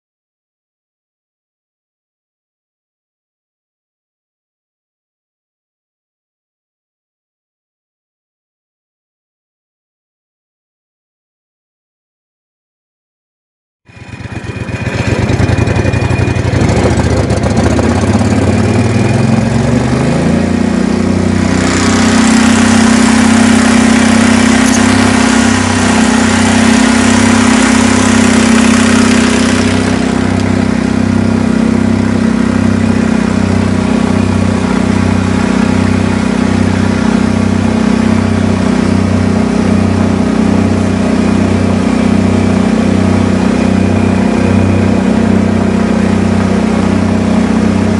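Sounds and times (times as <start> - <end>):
motor running with low pulsing: 13.9 - 47.9.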